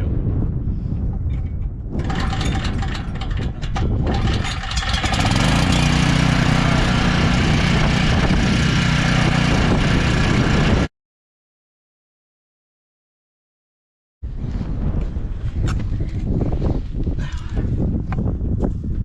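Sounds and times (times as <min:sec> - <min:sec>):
generator engine starting: 0:02.0 - 0:10.9.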